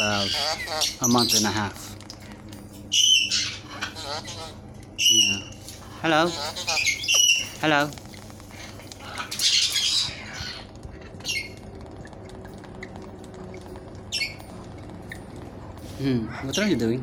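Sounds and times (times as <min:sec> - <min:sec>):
cockatoo squawking: 0:00.0 - 0:01.5, 0:02.9 - 0:11.7.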